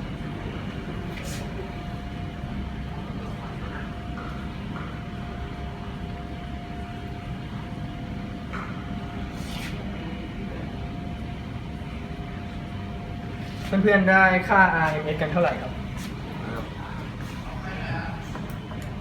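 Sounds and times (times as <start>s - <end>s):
faint constant whine: 0.0s - 19.0s
brief scratchy sounds: 9.4s - 9.8s.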